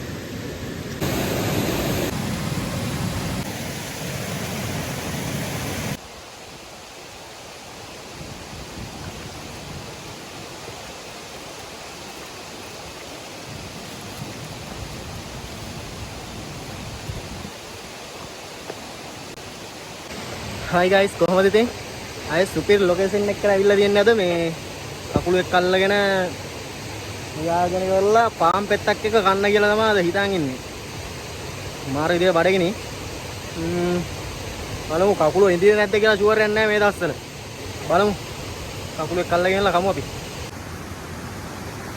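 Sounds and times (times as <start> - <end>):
stream water rushing: 0.0 - 41.9.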